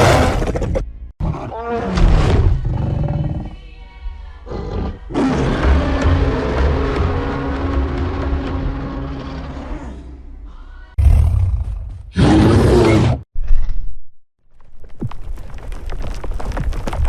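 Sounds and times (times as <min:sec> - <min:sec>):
giant ape roar: 0:00.0 - 0:00.6, 0:01.2 - 0:03.6, 0:04.5 - 0:10.2, 0:11.0 - 0:13.2.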